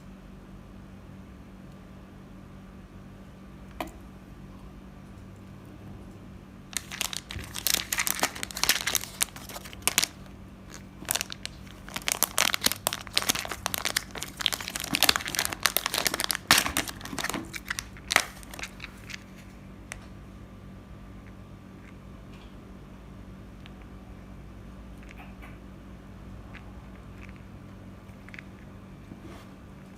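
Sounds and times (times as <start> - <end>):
steady low hum: 0.0 - 29.9
crinkling and rustling: 6.7 - 20.2.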